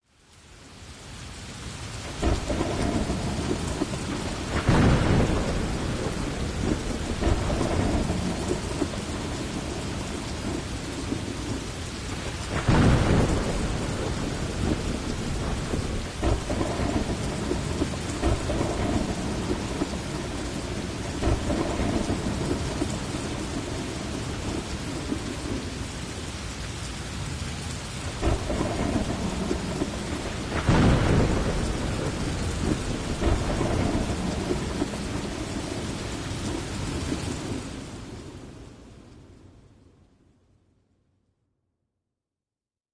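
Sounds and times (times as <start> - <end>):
heavy rain falling: 0.0 - 39.8
thunder rumbling: 2.0 - 38.8
loud thunderclap: 2.2 - 25.8, 28.1 - 38.3.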